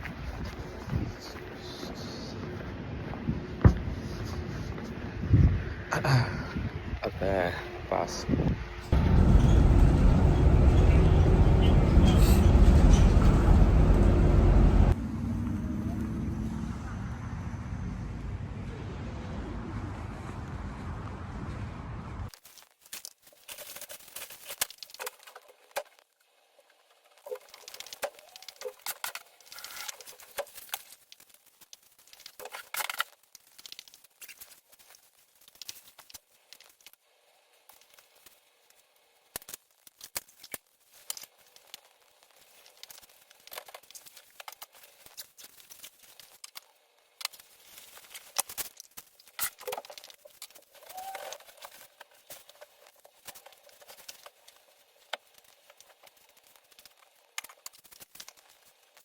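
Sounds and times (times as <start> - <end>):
crinkling rustles: 22.3 - 59.0.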